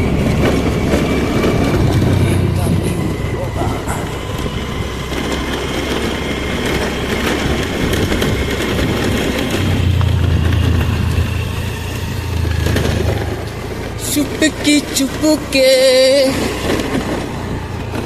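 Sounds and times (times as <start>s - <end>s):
moving vehicle rumble: 0.0s - 18.0s.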